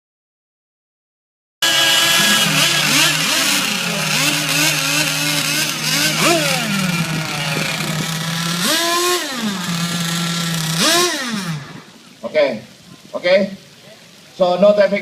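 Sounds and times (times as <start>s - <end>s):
small boat engine idling: 1.6s - 12.2s
small engines revving: 1.6s - 12.2s.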